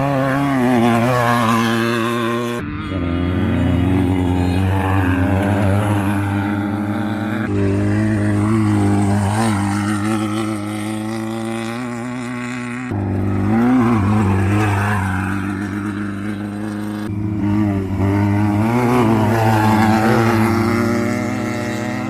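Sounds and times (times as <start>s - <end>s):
race vehicle engine revving: 0.0s - 22.0s.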